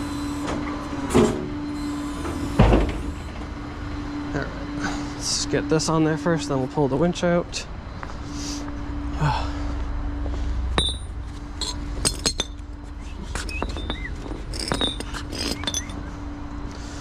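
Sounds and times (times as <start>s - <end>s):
tow truck engine humming: 0.0s - 17.0s
metal rigging clinking: 13.8s - 16.0s.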